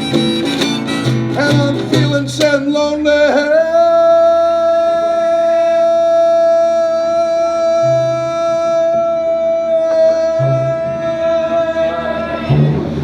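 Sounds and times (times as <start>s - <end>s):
live band accompaniment: 0.0s - 2.6s
man singing a long note: 1.4s - 13.0s.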